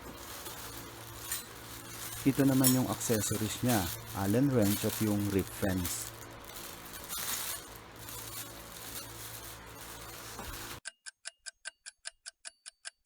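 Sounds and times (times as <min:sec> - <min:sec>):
steady hum: 0:00.0 - 0:10.8
clock-like ticking: 0:10.8 - 0:13.0.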